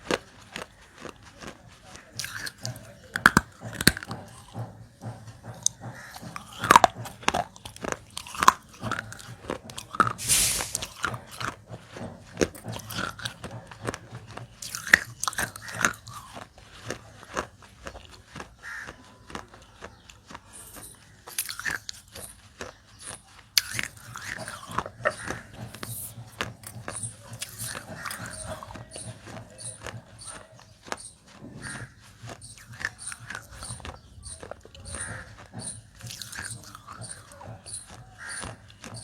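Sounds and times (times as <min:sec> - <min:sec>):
person crunching clay: 0:06.1 - 0:11.1.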